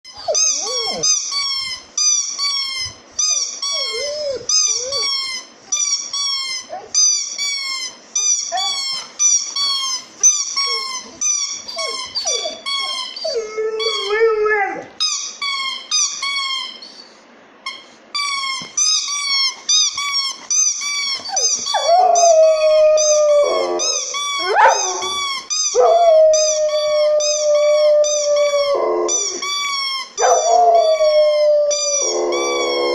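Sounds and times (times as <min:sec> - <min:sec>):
dog howling: 0:00.2 - 0:01.0, 0:21.6 - 0:29.5, 0:30.2 - 0:32.9.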